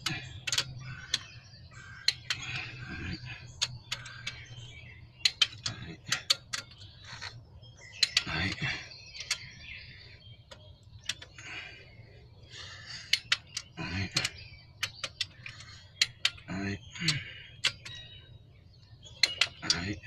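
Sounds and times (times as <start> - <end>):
ratchet wrench clicking: 0.0 - 1.4.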